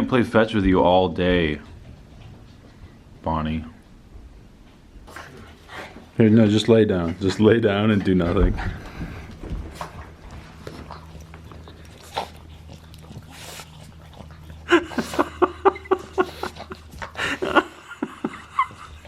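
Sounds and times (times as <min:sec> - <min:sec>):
dog panting: 0:05.0 - 0:19.0.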